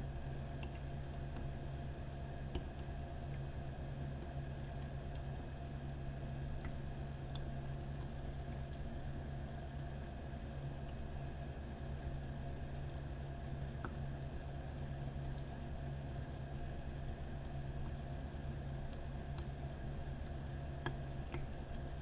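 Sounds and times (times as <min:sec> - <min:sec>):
water popping and dripping: 0:20.2 - 0:21.8.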